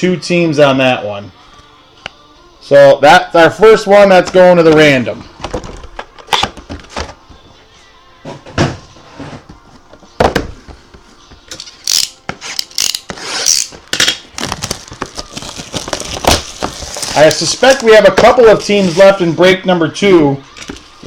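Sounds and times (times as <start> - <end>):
light rustling of packaging: 14.4 - 19.2.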